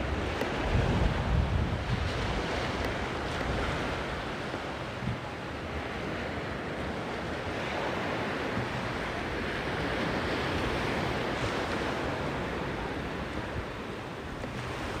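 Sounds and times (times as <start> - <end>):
surf washing onto beach: 0.0 - 15.0
wind buffeting microphone: 0.0 - 15.0.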